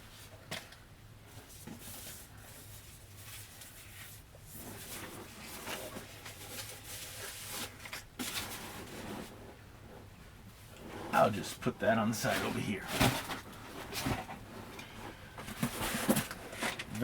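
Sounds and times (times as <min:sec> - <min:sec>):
packaging rustling and tapping: 0:12.9 - 0:17.0.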